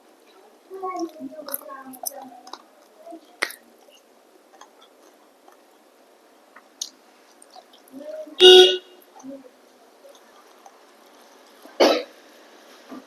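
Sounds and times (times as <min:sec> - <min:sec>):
quiet chewing: 0:00.2 - 0:05.9, 0:06.5 - 0:08.0, 0:09.0 - 0:11.8
throat-clearing cough: 0:11.8 - 0:12.1.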